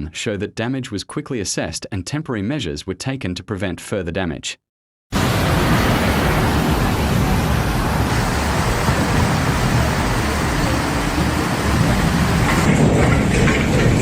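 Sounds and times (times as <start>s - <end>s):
strong wind on microphone: 5.2s - 14.0s.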